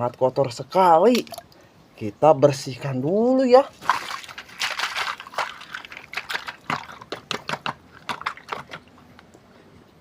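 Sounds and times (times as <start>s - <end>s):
wet scrubbing and clicking strokes: 3.8s - 9.3s.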